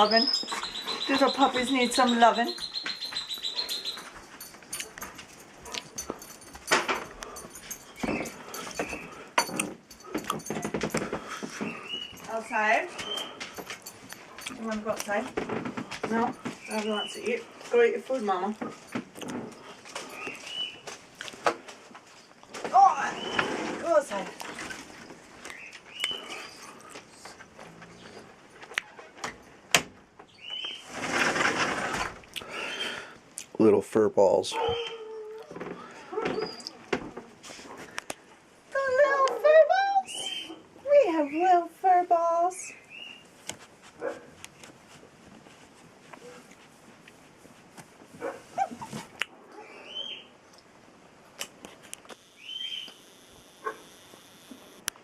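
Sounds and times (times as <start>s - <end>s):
puppy squeaking: 0.0s - 4.2s, 34.5s - 35.6s
rustling: 0.0s - 33.2s, 42.5s - 49.2s
puppies whimpering: 34.5s - 36.8s
puppy high squeals: 34.6s - 35.6s.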